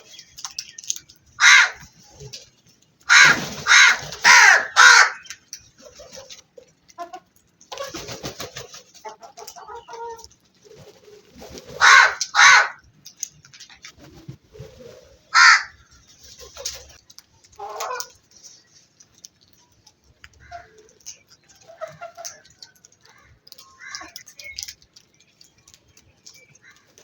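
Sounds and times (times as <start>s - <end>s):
crows cawing: 1.4s - 1.9s, 3.1s - 5.3s, 11.8s - 12.8s, 15.3s - 15.8s, 23.1s - 24.2s.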